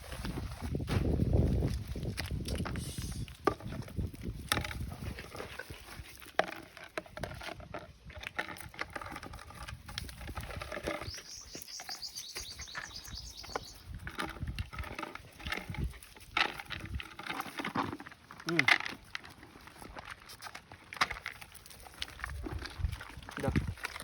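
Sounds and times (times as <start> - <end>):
dogs chewing and lapping: 3.6 - 24.0
high chirps: 11.0 - 13.9.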